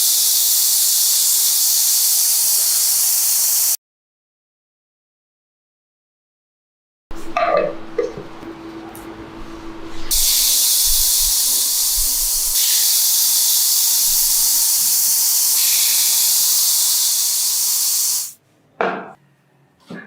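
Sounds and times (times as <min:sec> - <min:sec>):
compressed air hissing: 0:00.0 - 0:03.8, 0:09.7 - 0:18.4.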